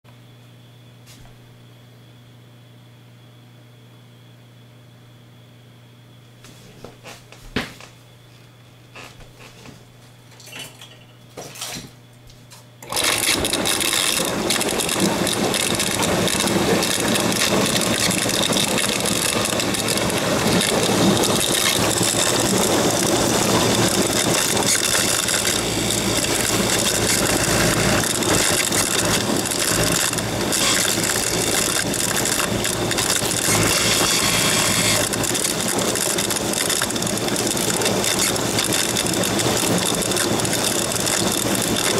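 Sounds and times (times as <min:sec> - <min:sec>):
dishwasher hum: 0:06.4 - 0:41.9
dishwasher grinding rattle: 0:10.3 - 0:12.0, 0:12.8 - 0:41.9.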